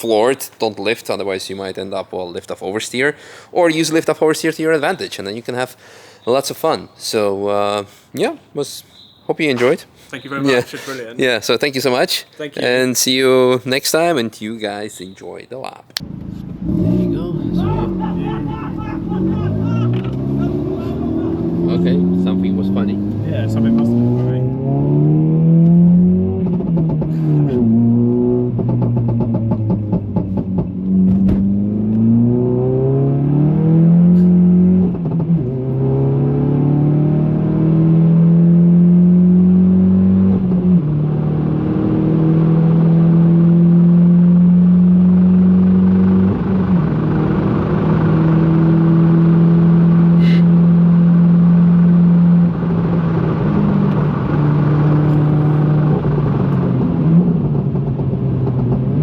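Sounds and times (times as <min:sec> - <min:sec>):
car engine revving through gears: 0:16.0 - 0:59.0.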